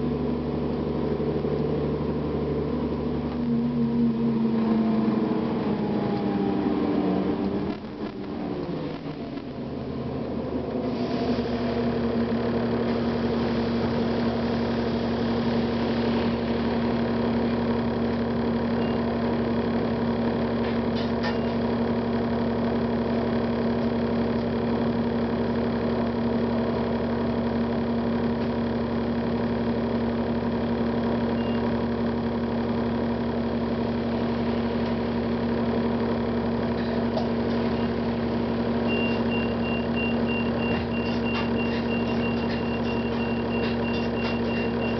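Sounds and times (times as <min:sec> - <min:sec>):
diesel bus engine running: 0:00.0 - 0:44.9
short high electronic beeps: 0:38.9 - 0:44.9.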